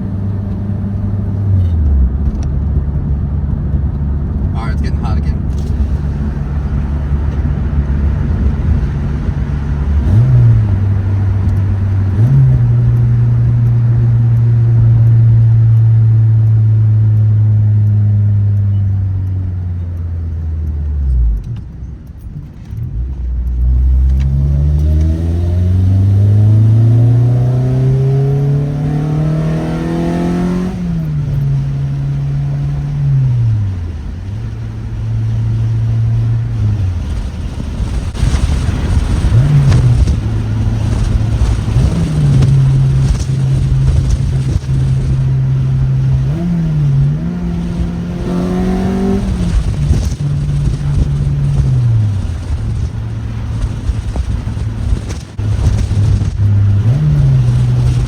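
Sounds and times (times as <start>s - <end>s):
car engine revving from cabin: 4.4s - 19.2s, 23.0s - 58.0s.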